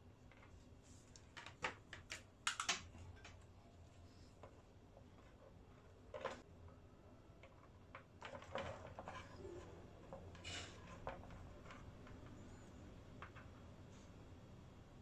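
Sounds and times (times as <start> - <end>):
tools and wires clicking: 1.2 - 3.4.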